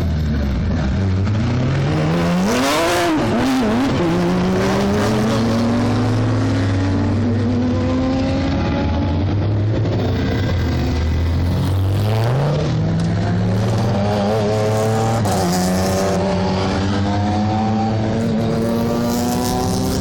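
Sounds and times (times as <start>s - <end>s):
racing car engine accelerating: 0.6s - 20.0s.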